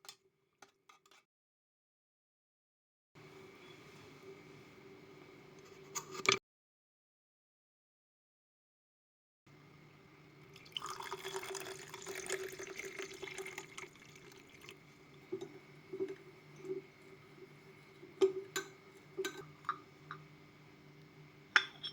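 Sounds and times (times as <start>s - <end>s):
liquid pouring into a glass: 10.5s - 16.1s.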